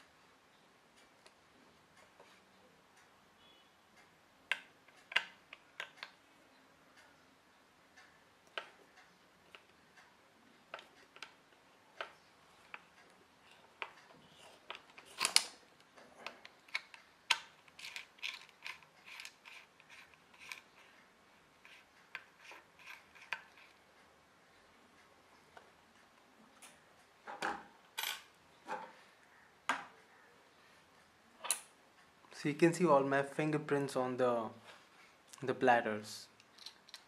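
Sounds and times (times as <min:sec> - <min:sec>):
metallic clicks and scrapes: 0:12.0 - 0:23.8.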